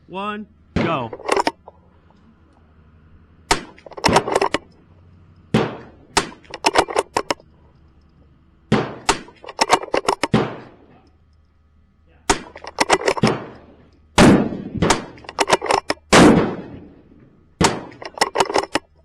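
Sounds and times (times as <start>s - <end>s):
rifle shots cracking: 3.5s - 4.7s, 5.4s - 7.4s, 8.7s - 10.9s, 12.3s - 18.9s.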